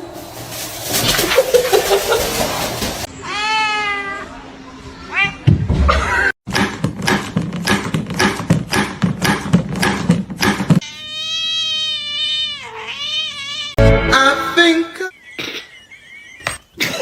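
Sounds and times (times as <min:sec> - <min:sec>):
cat meowing: 0:10.8 - 0:13.8.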